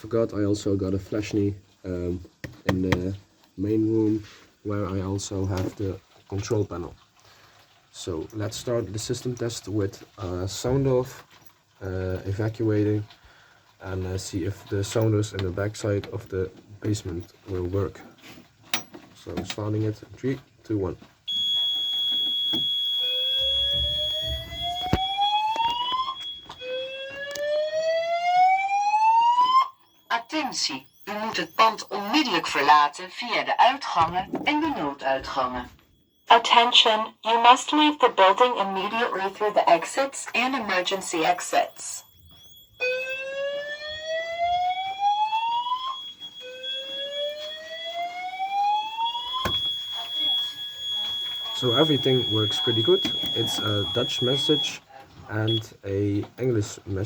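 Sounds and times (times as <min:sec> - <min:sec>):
alarm buzzer steady high tone: 0:21.3 - 0:37.1, 0:38.9 - 0:54.8
slow rising whoop siren: 0:23.0 - 0:29.9, 0:42.8 - 0:52.7.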